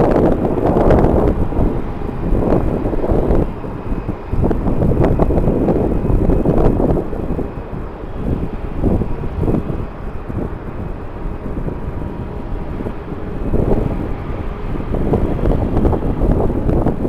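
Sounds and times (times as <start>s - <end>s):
faint engine whine: 0.0s - 17.0s
jet engines rumbling: 0.0s - 17.0s
wind gusting on microphone: 0.0s - 17.0s.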